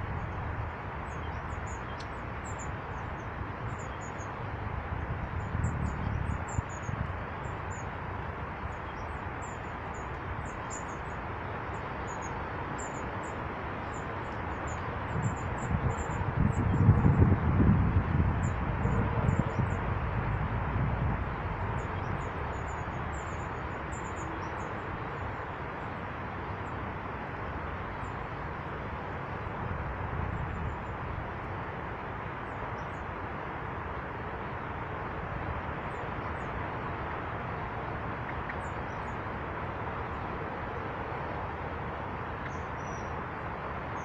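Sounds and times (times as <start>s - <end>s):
steady rushing background noise: 0.0s - 44.0s
small birds chirping: 1.0s - 4.4s, 8.6s - 17.1s, 42.4s - 44.0s.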